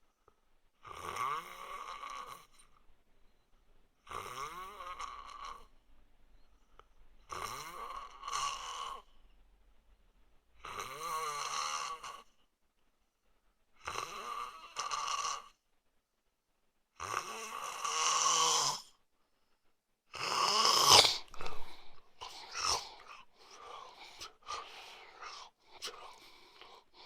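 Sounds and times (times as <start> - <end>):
man snoring: 0.8 - 2.5, 4.1 - 5.7, 7.3 - 9.0, 10.6 - 12.2, 13.8 - 15.6, 17.0 - 18.9, 20.1 - 27.0.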